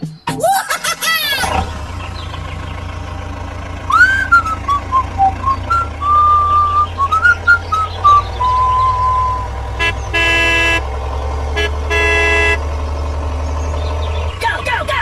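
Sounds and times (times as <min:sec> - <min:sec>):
low engine-like hum: 0:01.0 - 0:15.0
rising gliding tones: 0:03.9 - 0:09.6
whistled tune: 0:03.9 - 0:10.6.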